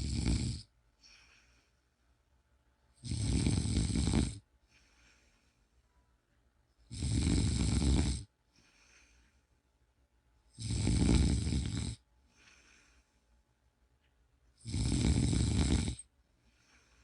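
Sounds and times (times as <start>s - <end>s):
person snoring: 0.0s - 1.3s, 3.0s - 4.4s, 6.9s - 8.3s, 10.6s - 12.8s, 14.6s - 16.1s
faint breath: 0.9s - 2.2s, 4.6s - 6.1s, 8.4s - 9.7s, 12.2s - 13.6s, 16.3s - 17.0s.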